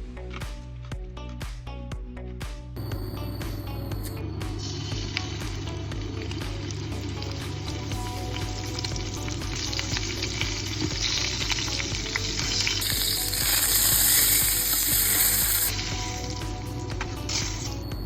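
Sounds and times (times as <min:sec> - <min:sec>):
food sizzling in hot oil: 0:04.5 - 0:18.0.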